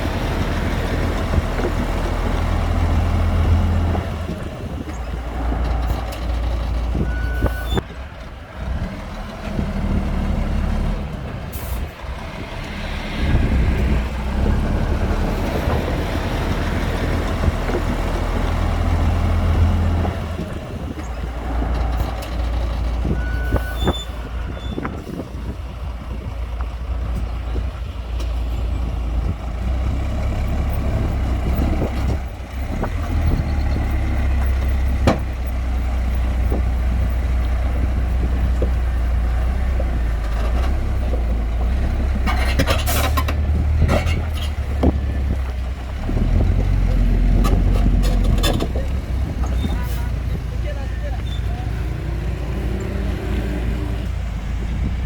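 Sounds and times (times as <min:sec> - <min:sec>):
diesel machinery engine rumble: 0:00.0 - 0:55.0.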